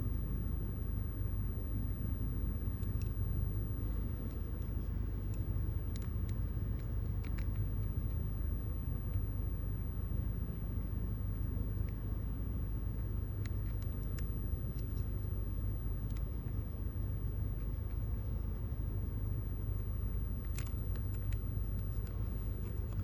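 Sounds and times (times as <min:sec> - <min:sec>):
steady low rumble: 0:00.0 - 0:23.0.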